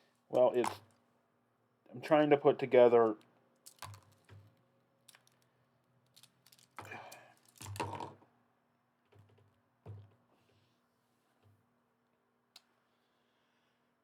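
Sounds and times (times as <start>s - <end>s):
plastic pieces clicking and knocking: 3.6s - 8.2s.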